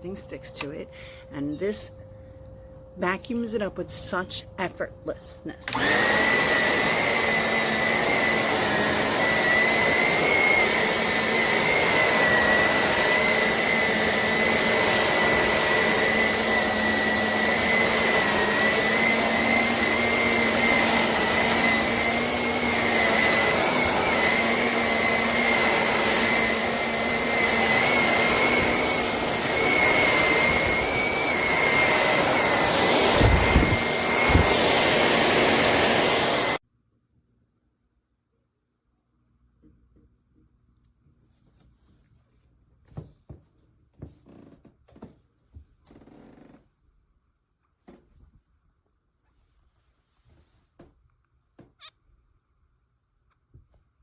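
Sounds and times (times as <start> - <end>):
upright vacuum running on carpet: 5.6 - 36.6.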